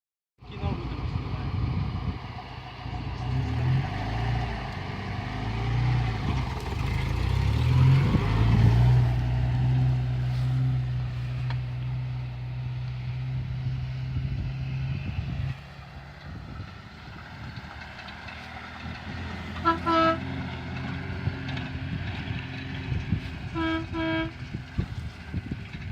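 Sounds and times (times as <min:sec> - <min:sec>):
suv engine running: 0:00.5 - 0:25.9.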